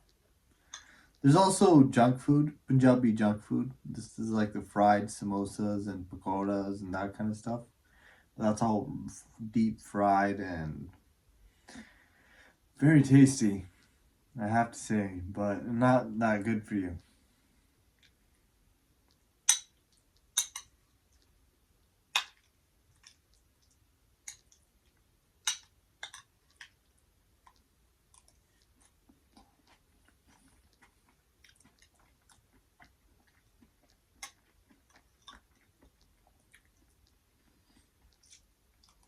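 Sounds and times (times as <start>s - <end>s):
person chewing food: 17.0s - 39.0s.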